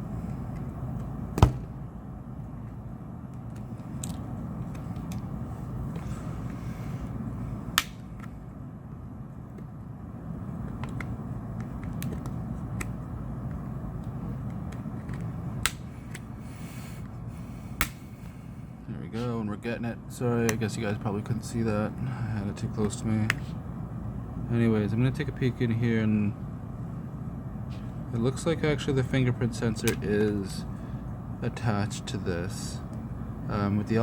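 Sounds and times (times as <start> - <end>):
low background hum: 0.0 - 34.0.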